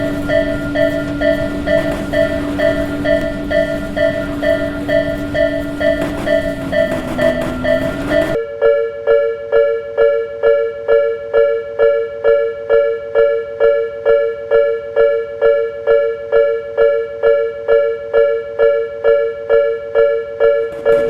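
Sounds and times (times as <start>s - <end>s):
level crossing warning bell: 0.0s - 8.4s, 20.0s - 21.0s.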